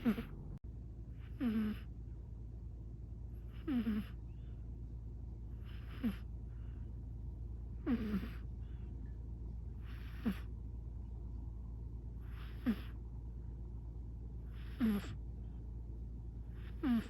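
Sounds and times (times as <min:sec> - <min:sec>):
cat snoring: 0:00.0 - 0:00.4, 0:01.2 - 0:01.9, 0:03.4 - 0:04.2, 0:05.5 - 0:06.8, 0:07.8 - 0:08.5, 0:09.8 - 0:10.6, 0:12.2 - 0:13.0, 0:14.4 - 0:15.2, 0:16.5 - 0:17.0
faint breaths: 0:00.0 - 0:02.1, 0:03.3 - 0:17.0.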